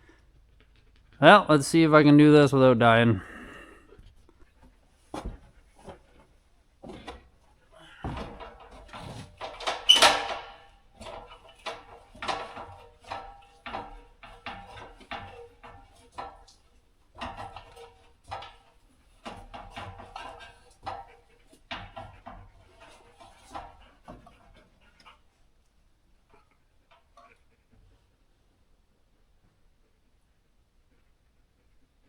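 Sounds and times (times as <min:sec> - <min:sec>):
ladder knocking and clanking: 0:06.8 - 0:24.8
garage door hardware clattering: 0:08.1 - 0:21.1.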